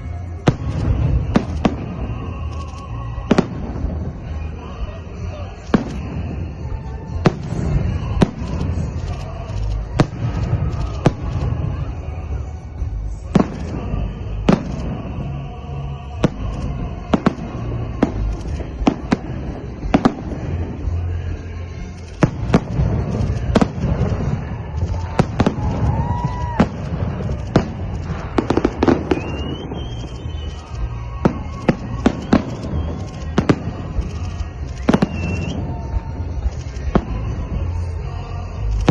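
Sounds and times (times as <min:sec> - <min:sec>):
firework whistles: 0:00.0 - 0:12.5, 0:22.2 - 0:38.9
fireworks bursting bangs: 0:00.0 - 0:38.9.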